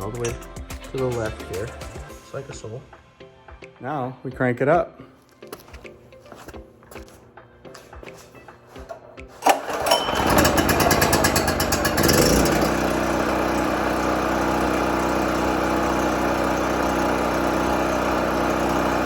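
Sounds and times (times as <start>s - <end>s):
generator engine pull-started: 8.8s - 19.0s.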